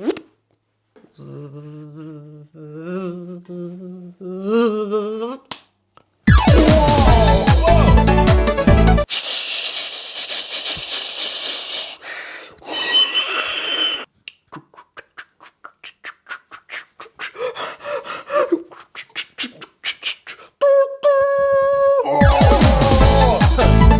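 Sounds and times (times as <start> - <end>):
music: 6.3 - 9.1, 22.2 - 23.9
beatboxing mouth sounds: 9.1 - 17.8, 18.5 - 21.1, 22.2 - 23.8.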